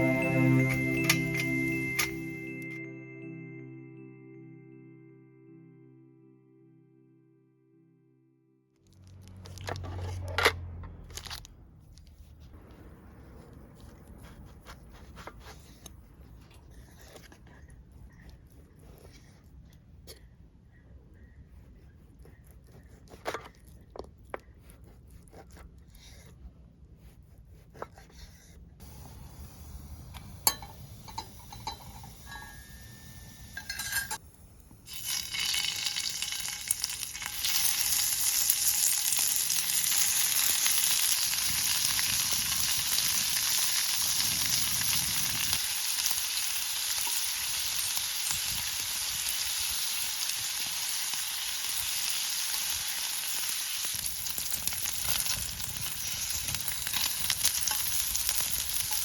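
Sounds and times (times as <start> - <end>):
food sizzling in a pan: 28.8 - 34.2, 34.9 - 59.0.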